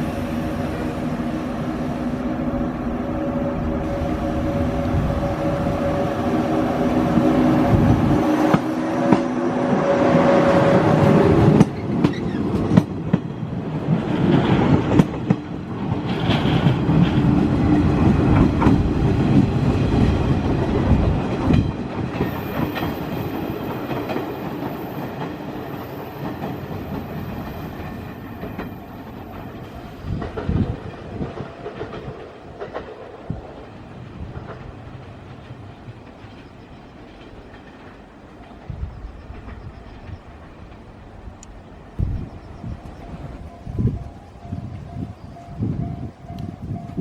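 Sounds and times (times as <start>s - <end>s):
train motor hum: 0.0s - 12.8s
train wheels clacking over rail joints: 10.6s - 41.6s.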